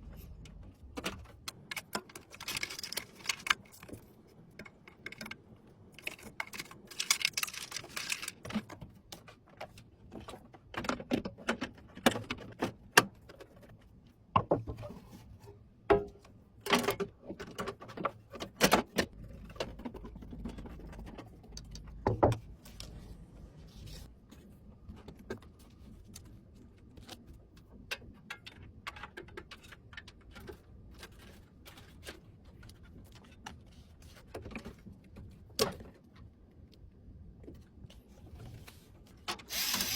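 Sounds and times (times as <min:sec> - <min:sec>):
computer parts clicking and clattering: 0:00.0 - 0:08.8.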